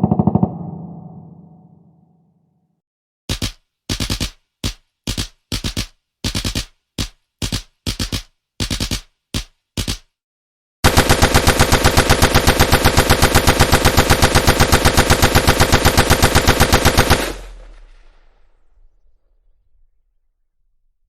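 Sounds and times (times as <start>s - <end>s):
gunfire echo: 0.0s - 1.8s
machine gun firing bursts: 10.8s - 18.0s.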